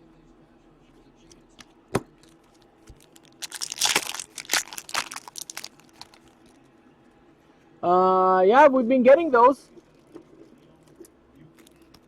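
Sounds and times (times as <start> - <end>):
foil wrapper crinkling and tearing: 2.9 - 6.5.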